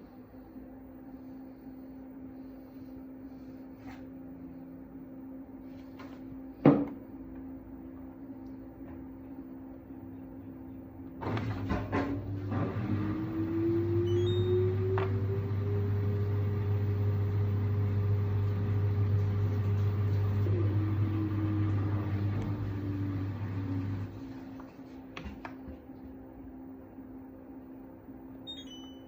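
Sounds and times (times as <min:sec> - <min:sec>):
washing machine motor whining: 0:00.0 - 0:29.0
short electronic beep: 0:28.5 - 0:29.0.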